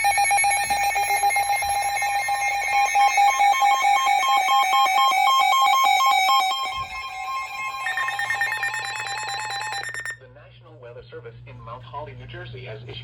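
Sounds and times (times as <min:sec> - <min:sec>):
higher blinking tone: 0:00.0 - 0:10.2
rapidly pulsing beep: 0:00.0 - 0:10.2.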